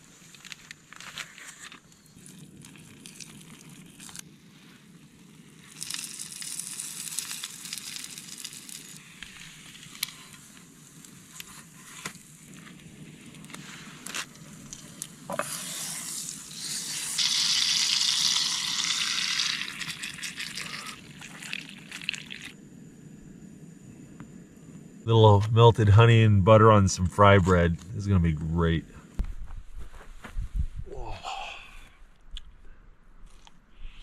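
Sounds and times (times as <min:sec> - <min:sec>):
dough sizzling in a hot pan: 0:02.0 - 0:14.0, 0:14.7 - 0:22.6.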